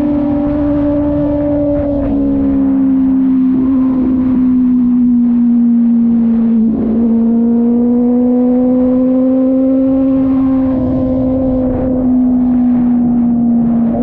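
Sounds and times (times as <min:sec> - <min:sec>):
wind and road rumble: 0:00.0 - 0:14.0.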